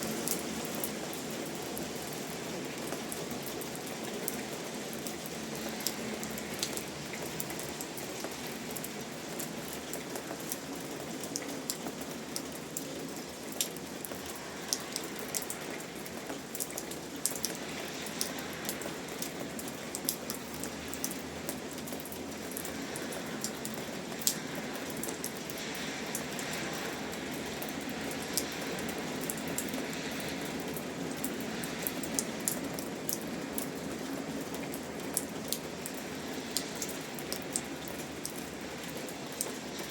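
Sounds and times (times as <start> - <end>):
rain drops ticking on hard surface: 0.0 - 39.9.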